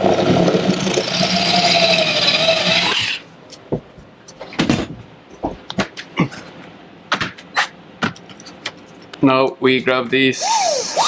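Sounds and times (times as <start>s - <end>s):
electric drill boring into tile: 0.0s - 3.2s.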